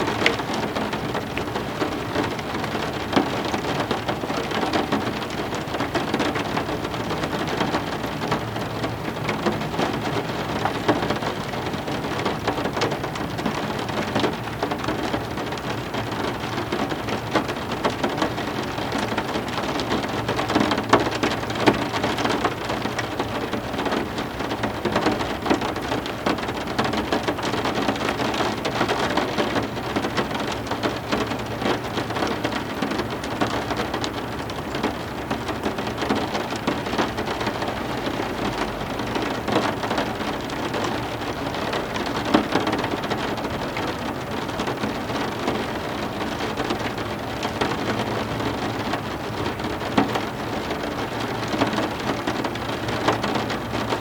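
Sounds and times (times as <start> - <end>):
heavy rain on a surface: 0.0 - 54.0.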